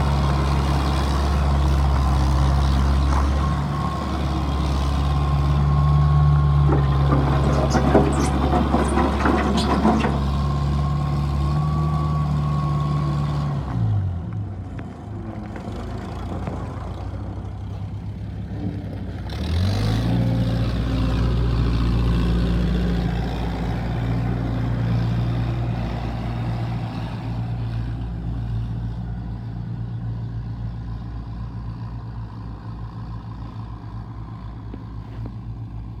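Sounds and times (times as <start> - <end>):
skid steer engine revving: 0.0 - 13.5, 18.4 - 27.1
clatter: 6.6 - 10.6.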